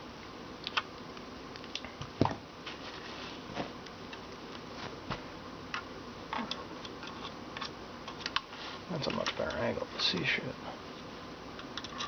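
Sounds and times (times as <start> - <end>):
clicks and knocks of small parts: 11.6 - 12.0.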